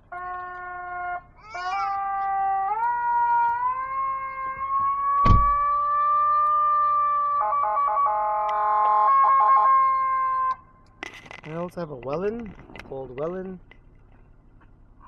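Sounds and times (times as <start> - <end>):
mechanical siren wail: 0.0 - 10.6.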